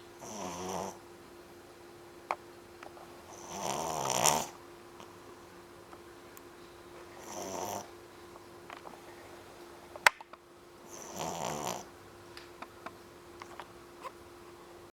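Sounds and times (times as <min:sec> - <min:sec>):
faint steady hum: 0:00.0 - 0:14.9
puppy snoring: 0:00.2 - 0:01.0, 0:03.2 - 0:05.3, 0:07.0 - 0:08.0, 0:10.8 - 0:11.9.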